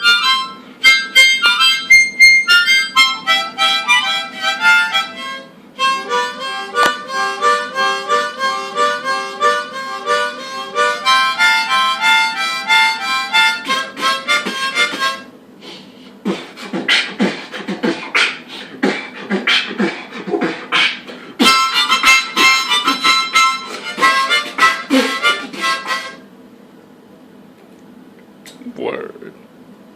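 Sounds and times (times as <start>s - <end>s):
harmonica chords: 0.0s - 26.3s
beatboxing: 13.4s - 26.2s.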